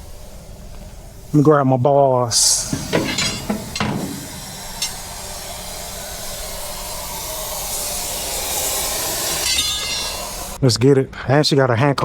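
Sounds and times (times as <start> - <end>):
air hissing from tire: 0.0 - 10.6
light metal clinking: 2.6 - 5.0.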